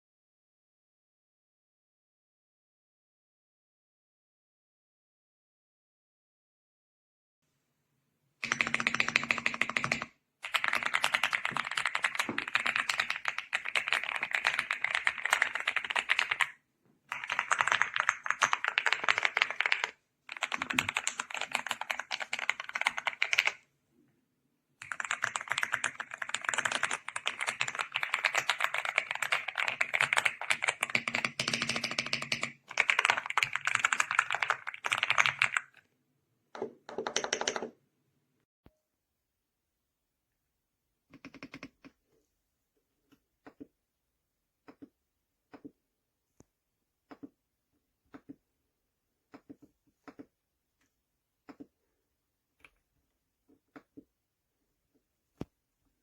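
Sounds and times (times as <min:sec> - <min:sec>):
fast mechanical keyboard clacks: 0:08.4 - 0:16.5, 0:17.1 - 0:23.6, 0:24.8 - 0:35.8, 0:36.9 - 0:37.7.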